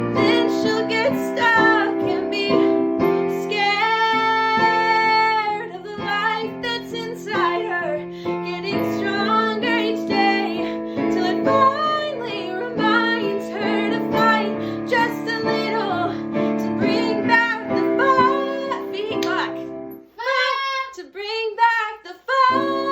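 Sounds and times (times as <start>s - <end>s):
piano accompaniment: 0.0s - 20.1s, 22.5s - 22.9s
woman singing: 0.0s - 22.9s.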